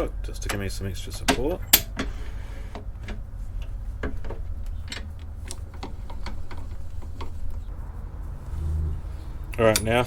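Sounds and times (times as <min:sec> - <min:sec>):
steady low hum: 0:00.0 - 0:10.0.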